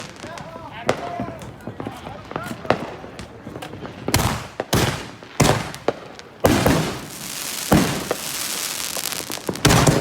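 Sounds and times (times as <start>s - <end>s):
fireworks bangs: 0.0s - 10.0s
fireworks hiss: 6.5s - 10.0s.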